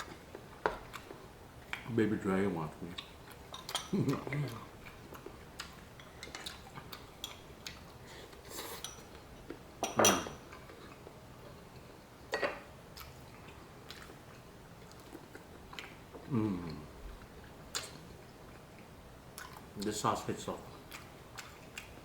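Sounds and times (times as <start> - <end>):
utensils clinking on dishes: 9.8 - 10.4.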